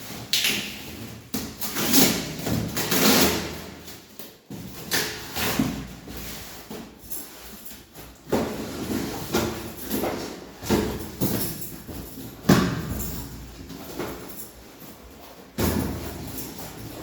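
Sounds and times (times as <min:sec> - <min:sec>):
objects rustling and scraping: 0:00.0 - 0:17.0.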